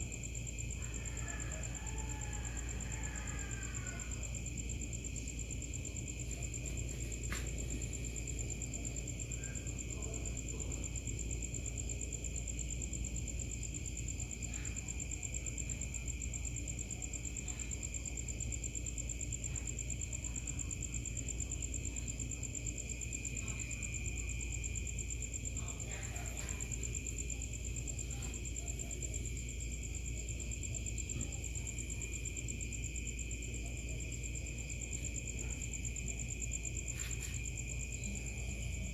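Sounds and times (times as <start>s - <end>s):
night insects trilling: 0.0s - 38.9s.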